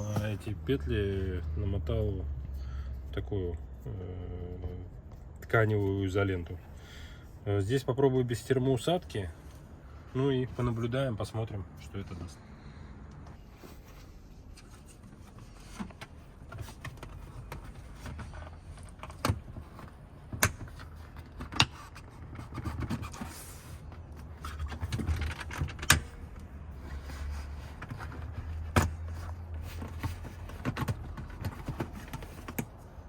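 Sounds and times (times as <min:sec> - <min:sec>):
rustling handling noise: 0:13.3 - 0:33.0.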